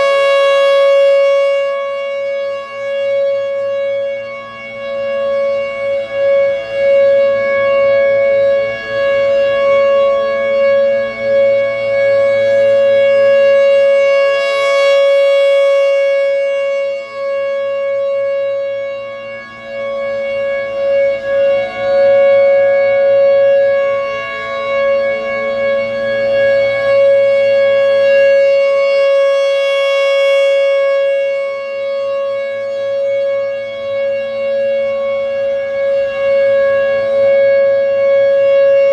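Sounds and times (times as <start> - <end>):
rotating warning siren: 0.0 - 38.9.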